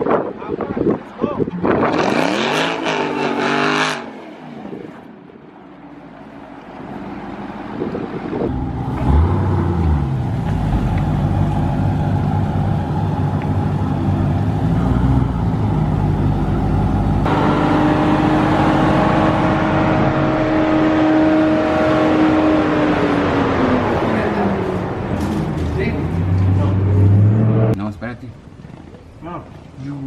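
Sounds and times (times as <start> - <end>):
car engine revving: 1.6 - 4.2, 7.7 - 27.8.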